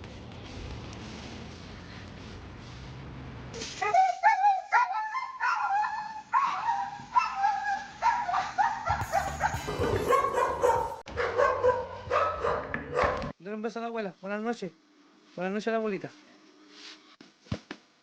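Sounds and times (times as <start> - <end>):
dog yipping and whining: 3.8 - 13.2.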